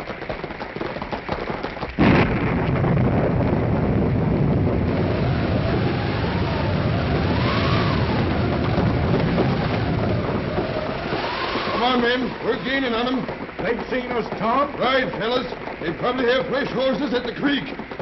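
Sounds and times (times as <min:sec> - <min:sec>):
rain rumbling: 0:00.0 - 0:18.0
thunder crash: 0:02.0 - 0:16.6
wind howling: 0:02.0 - 0:18.0.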